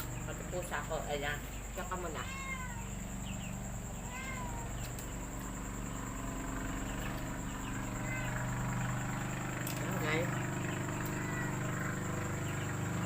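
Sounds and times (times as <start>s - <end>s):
steady low hum: 0.0s - 13.0s
cat meowing: 1.9s - 3.0s, 4.0s - 4.9s, 7.8s - 8.5s, 11.0s - 12.0s.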